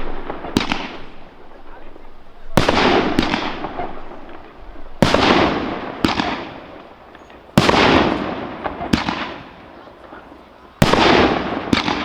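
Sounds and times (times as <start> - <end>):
fireworks bursting: 0.0 - 12.0.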